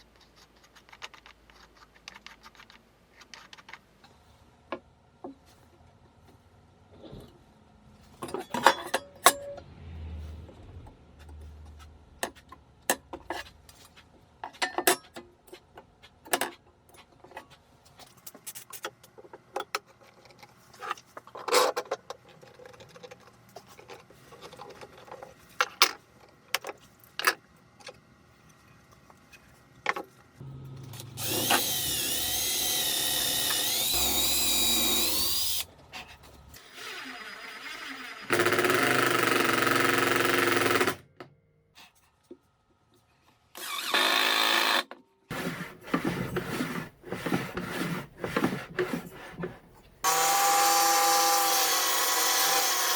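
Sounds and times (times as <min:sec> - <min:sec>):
power drill running: 0:30.4 - 0:35.7, 0:36.6 - 0:40.9, 0:43.6 - 0:44.8, 0:50.0 - 0:52.9.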